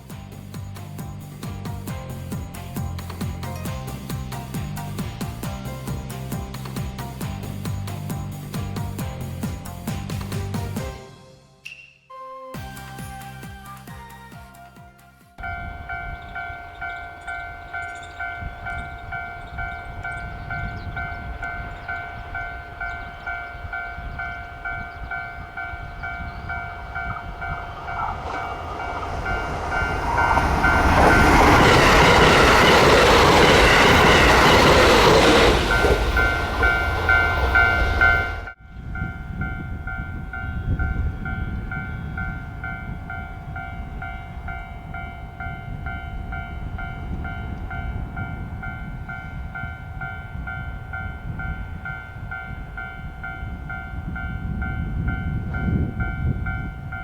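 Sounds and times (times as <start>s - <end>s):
train passing: 0.0s - 11.5s, 15.4s - 57.0s
level crossing bell ringing: 15.4s - 57.0s.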